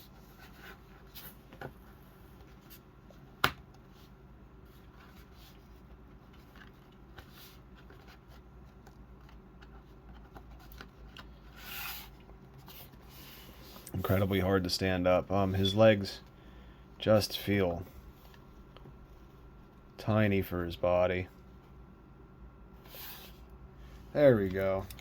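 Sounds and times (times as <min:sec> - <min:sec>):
faint rubbing of plastic figure: 0:03.9 - 0:14.4.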